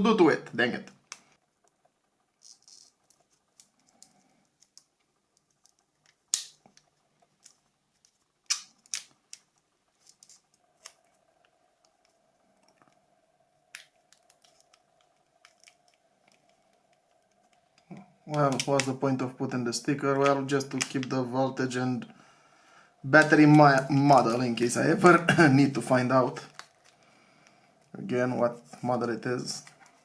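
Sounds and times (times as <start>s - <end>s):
faint steady hum: 0.0s - 30.0s
sharp snaps: 6.3s - 6.9s, 8.4s - 9.4s.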